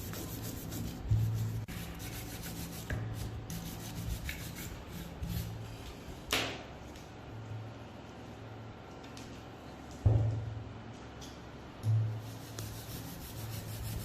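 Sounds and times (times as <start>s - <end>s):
sanding rubbing noise: 0.0s - 5.6s, 12.2s - 14.0s.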